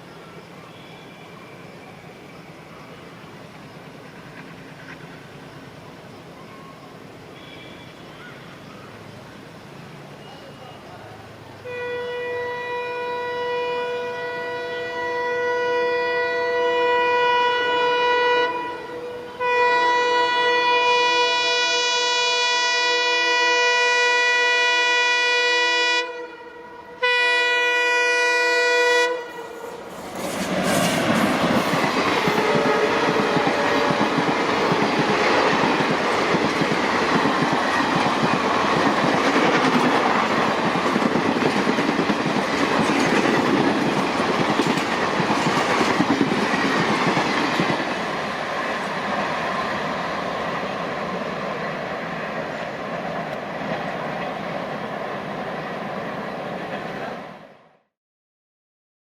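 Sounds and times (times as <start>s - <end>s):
train rushing past: 0.0s - 12.8s, 25.9s - 57.6s
diesel locomotive horn blast: 7.3s - 8.3s, 11.6s - 34.8s.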